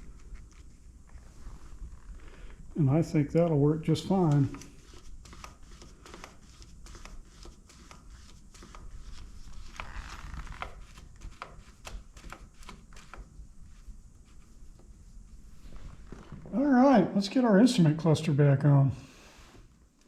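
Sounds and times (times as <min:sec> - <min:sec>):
rustling scrape: 0:13.6 - 0:16.5.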